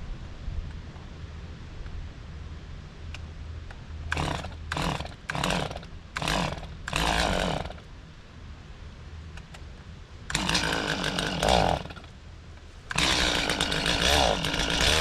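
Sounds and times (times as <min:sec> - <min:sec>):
chainsaw idling and revving: 0:04.1 - 0:07.9, 0:10.3 - 0:12.1, 0:12.9 - 0:15.0.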